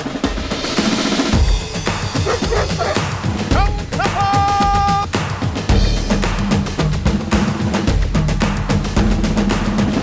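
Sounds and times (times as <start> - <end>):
music with steady drums: 0.0 - 10.0.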